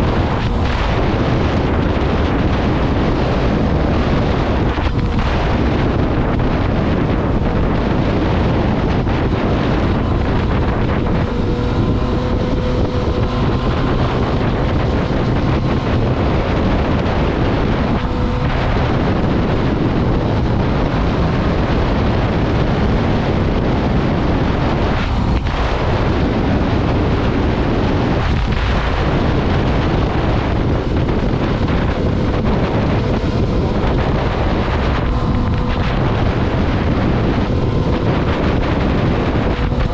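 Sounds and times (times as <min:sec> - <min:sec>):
motorcycle engine under load: 0:00.0 - 0:39.9
wind noise on microphone: 0:00.0 - 0:39.9.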